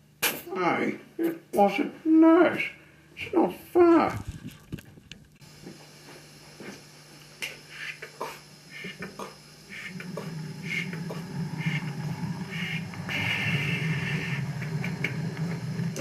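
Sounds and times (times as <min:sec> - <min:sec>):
steam locomotive running: 0:08.7 - 0:16.0.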